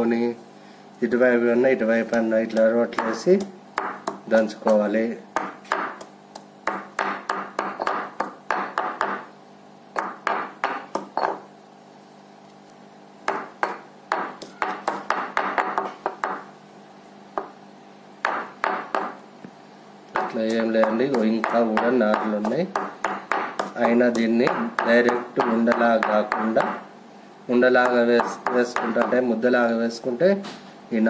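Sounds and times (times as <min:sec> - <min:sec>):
pestle pounding in stone mortar: 0:02.1 - 0:09.3, 0:09.9 - 0:11.5, 0:13.2 - 0:16.5, 0:18.2 - 0:19.2, 0:20.1 - 0:26.9, 0:27.7 - 0:29.3.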